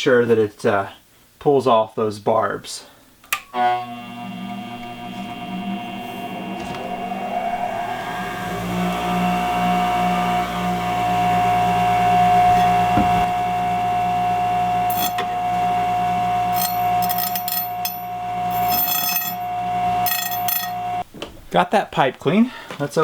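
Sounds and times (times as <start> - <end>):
angle grinder whining: 3.6 - 21.0
grinding disc scraping metal pipe: 6.0 - 21.0.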